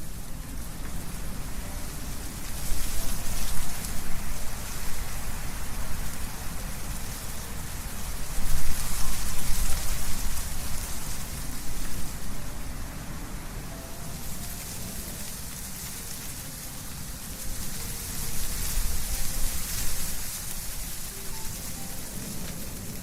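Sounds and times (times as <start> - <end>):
wind rustling leaves: 0.0 - 23.0.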